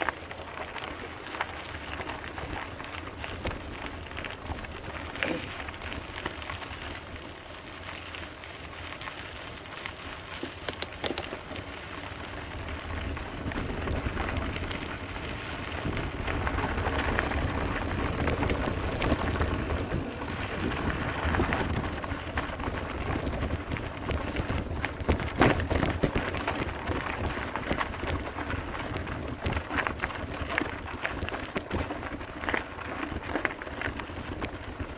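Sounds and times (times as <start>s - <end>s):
bike tyres crackling over stones: 0.0s - 34.9s
sharp clicks: 10.6s - 11.4s.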